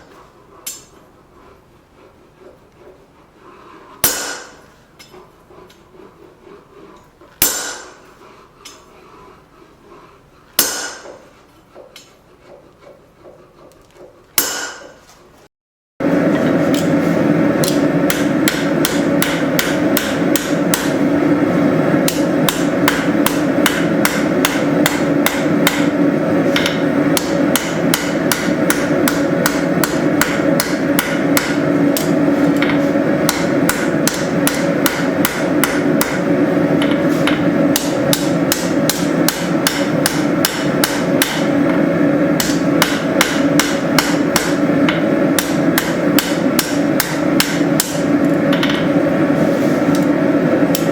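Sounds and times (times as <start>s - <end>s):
hammer blows on hot steel: 4.0s - 4.8s, 7.4s - 8.1s, 16.0s - 50.9s
low hum: 16.0s - 50.9s.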